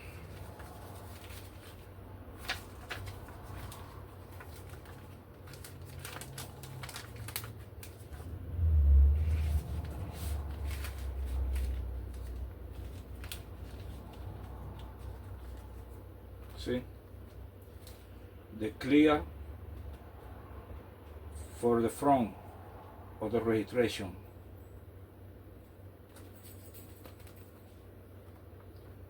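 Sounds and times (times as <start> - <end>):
plastic bag and paper crinkling: 0.0 - 8.3, 9.2 - 18.3, 26.1 - 28.4.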